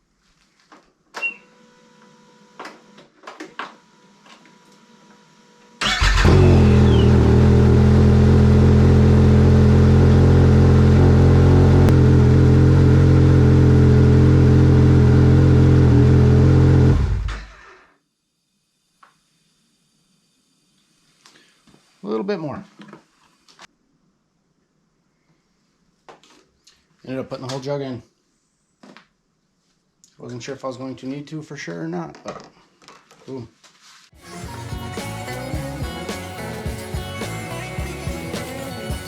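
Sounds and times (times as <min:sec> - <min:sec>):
snowmobile engine idling: 0:06.2 - 0:17.3.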